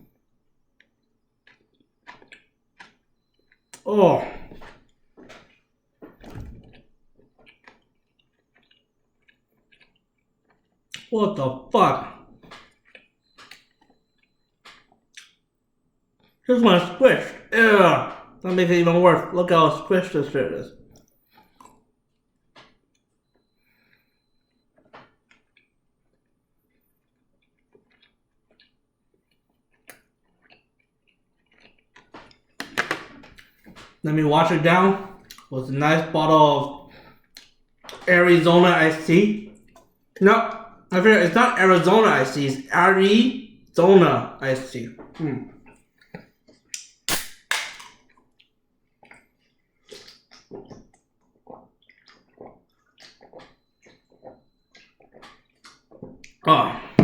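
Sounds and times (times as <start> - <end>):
person chewing: 0.8 - 5.7, 6.6 - 11.1, 12.0 - 15.4, 24.8 - 34.0, 35.0 - 35.5, 36.7 - 38.1, 39.5 - 40.9, 45.2 - 56.9
bottle cap cracking open: 46.8 - 48.0.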